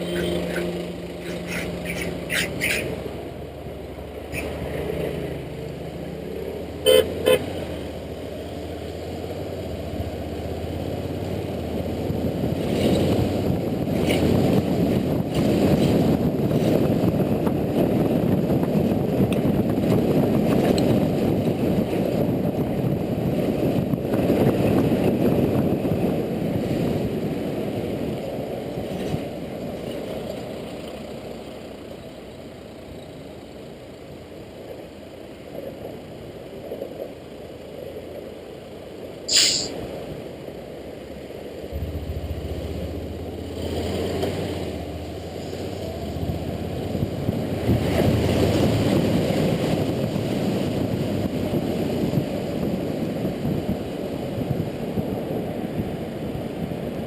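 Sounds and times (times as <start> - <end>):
vehicle horn toots: 0.0 - 0.7, 6.8 - 7.5
motorcycle engine riding: 0.0 - 38.6, 41.6 - 55.4
wind and road noise: 0.0 - 57.0.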